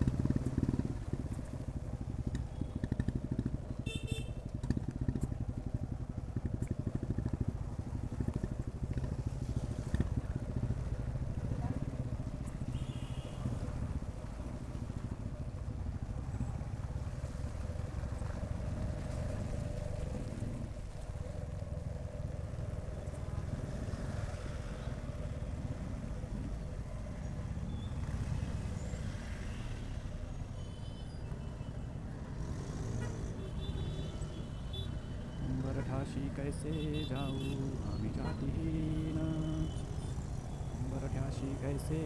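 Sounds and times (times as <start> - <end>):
motorcycle engine running: 0.0 - 24.2, 36.2 - 42.0
wind and road noise: 0.0 - 42.0.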